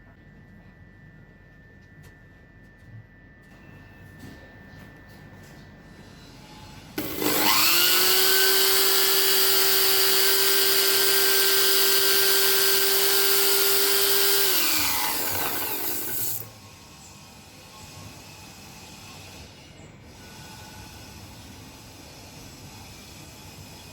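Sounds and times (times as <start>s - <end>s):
small electric motor whine: 6.5s - 16.5s.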